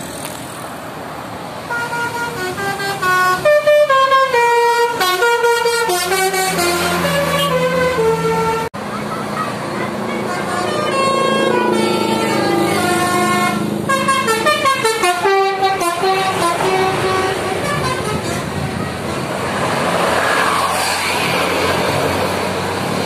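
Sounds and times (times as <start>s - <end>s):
passing traffic: 0.0s - 23.0s
musical bus horn playing tune: 1.7s - 8.8s, 10.1s - 19.3s.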